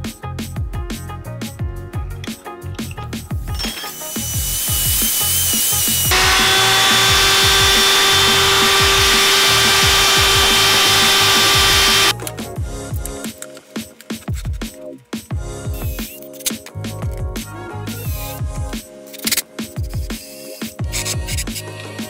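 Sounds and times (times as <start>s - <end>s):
wood router whining: 4.1s - 12.1s.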